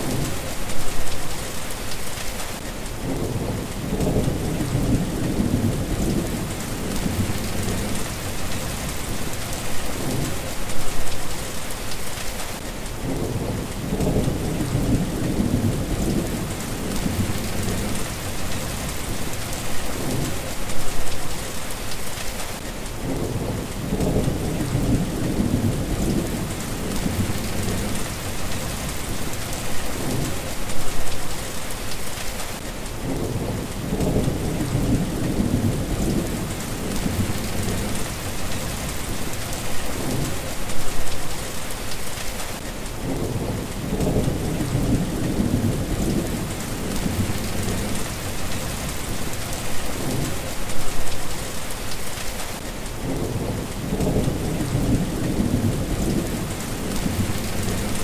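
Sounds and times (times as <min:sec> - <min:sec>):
steady rain falling: 0:00.0 - 0:58.0
low rolling thunder: 0:03.0 - 0:10.9, 0:13.0 - 0:20.9, 0:23.0 - 0:31.1, 0:33.0 - 0:41.1, 0:43.0 - 0:51.1, 0:53.0 - 0:58.0.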